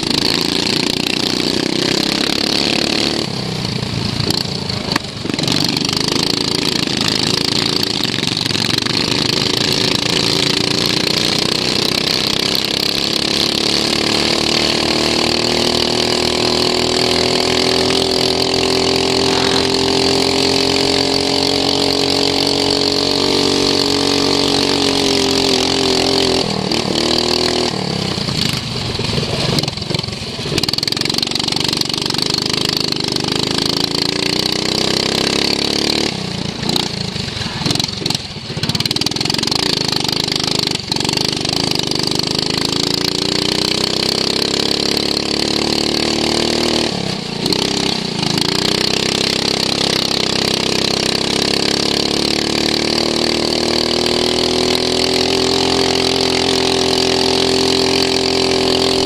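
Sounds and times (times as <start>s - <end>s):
lawn mower engine revving: 0.0s - 59.0s
steady high whine: 18.6s - 21.2s.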